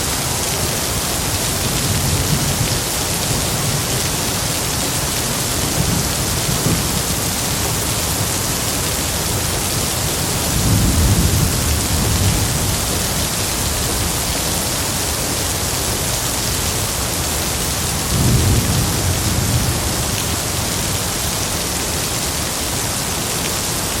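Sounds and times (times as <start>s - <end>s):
steady rain hiss: 0.0s - 24.0s
low rolls of thunder: 10.6s - 13.1s, 18.0s - 20.2s.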